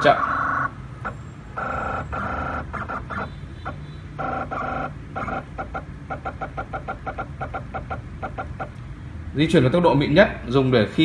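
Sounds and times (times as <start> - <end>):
stepper motor short pulses: 0.0 - 8.8
stepper motor whine: 0.0 - 8.8.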